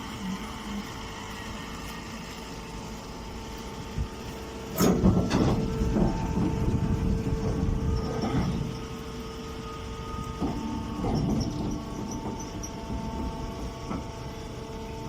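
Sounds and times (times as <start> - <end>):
baler machine humming: 0.0 - 15.0
loud rattling rumble: 3.2 - 14.9.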